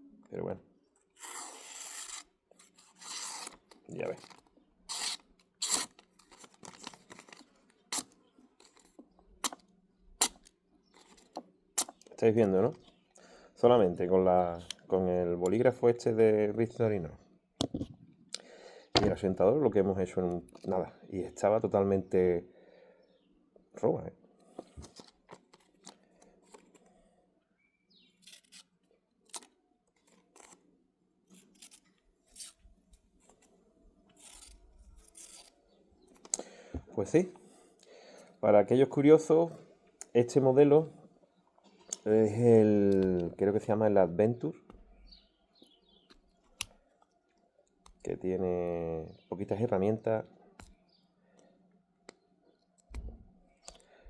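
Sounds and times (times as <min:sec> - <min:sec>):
knife blade scrape: 0:01.2 - 0:06.0, 0:28.2 - 0:28.7, 0:31.3 - 0:32.6, 0:34.2 - 0:35.6.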